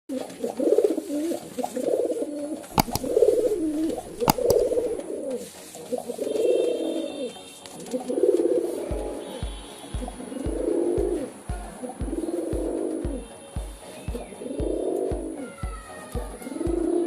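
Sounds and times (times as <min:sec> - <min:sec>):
sharp clicks: 0:02.8 - 0:05.0.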